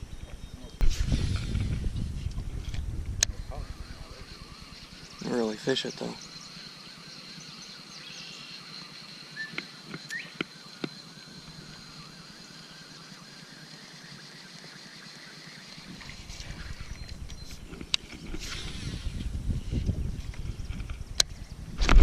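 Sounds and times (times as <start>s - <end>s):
low rumbling noise: 0.0s - 7.8s.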